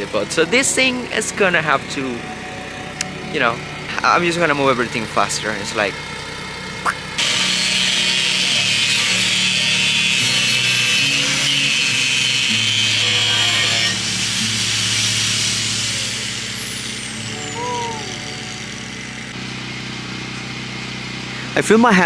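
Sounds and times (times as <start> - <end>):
grinder disc whine spinning down: 0.0 - 21.0
angle grinder cutting steel: 7.0 - 19.9.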